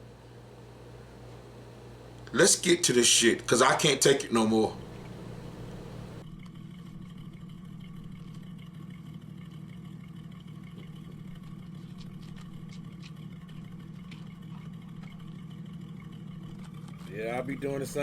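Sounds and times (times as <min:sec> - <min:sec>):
car engine humming: 0:00.7 - 0:06.2.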